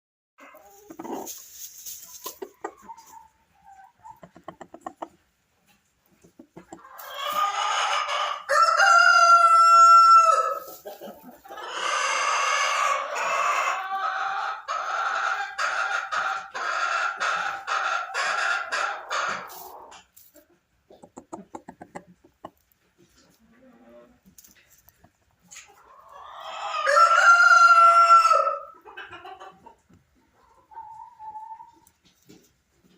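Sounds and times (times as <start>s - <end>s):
rhythmic clucks: 4.0s - 5.2s, 6.1s - 6.9s, 20.9s - 22.6s
rooster crowing: 7.2s - 10.6s, 26.4s - 28.7s.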